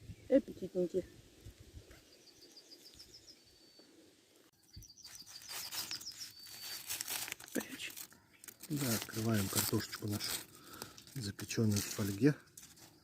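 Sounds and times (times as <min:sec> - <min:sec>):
songbird singing: 0:00.0 - 0:11.4
faint rustling: 0:05.0 - 0:13.0.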